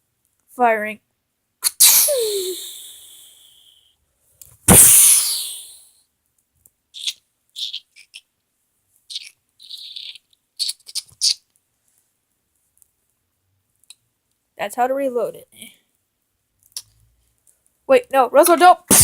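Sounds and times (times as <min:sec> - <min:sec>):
loud burst of noise: 0:04.7 - 0:05.8.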